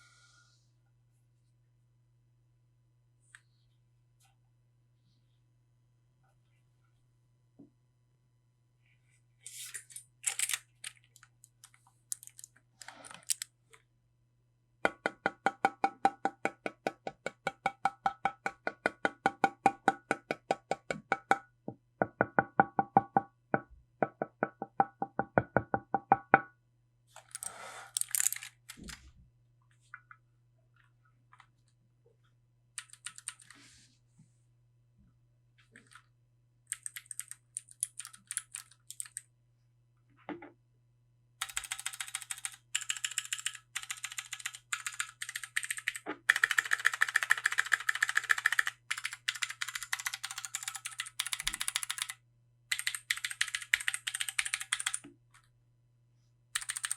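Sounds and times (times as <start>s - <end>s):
mechanical keyboard keystrokes: 32.8s - 33.5s, 36.7s - 39.2s, 41.4s - 55.0s, 56.6s - 56.9s.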